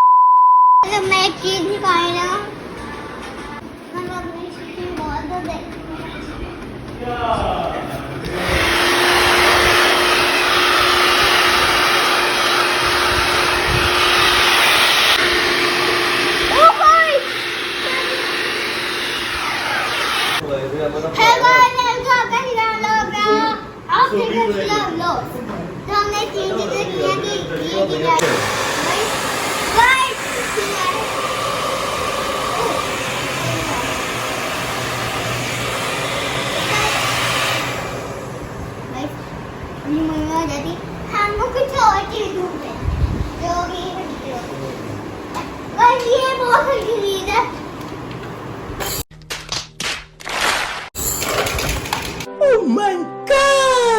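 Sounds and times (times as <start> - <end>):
hair dryer running: 8.2 - 20.4, 28.1 - 39.1.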